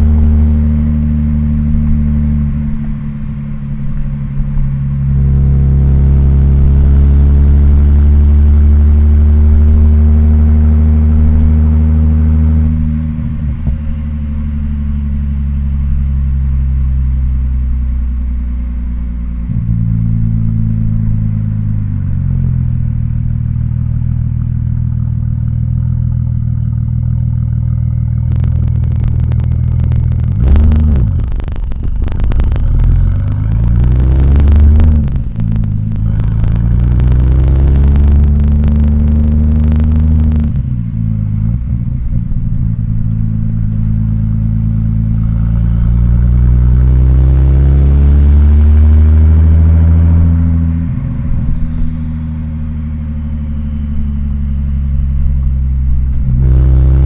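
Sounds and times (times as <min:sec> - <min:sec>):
car engine cruising: 0:00.0 - 0:57.0
turbo fluttering chatter: 0:28.2 - 0:40.5.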